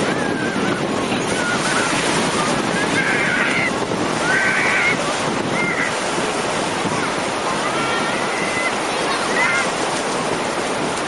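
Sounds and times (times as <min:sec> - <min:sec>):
sea waves washing on shore: 0:00.0 - 0:11.0
wind buffeting microphone: 0:00.0 - 0:11.0.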